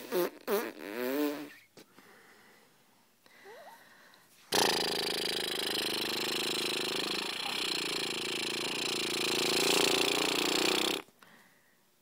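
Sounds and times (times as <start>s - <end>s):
woman making buzzing noise with mouth: 4.5s - 11.1s.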